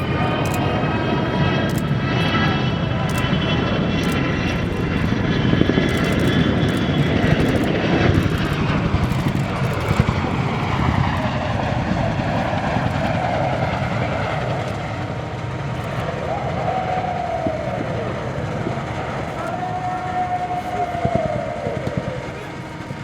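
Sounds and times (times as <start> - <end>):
helicopter rotors beating: 0.0 - 23.0
high turbine whine: 0.0 - 23.0.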